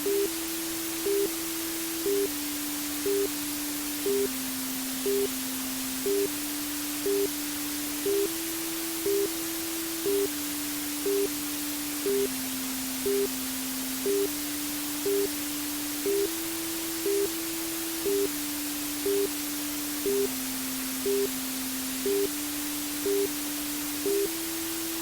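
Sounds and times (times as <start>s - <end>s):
white-noise hiss: 0.0s - 25.0s.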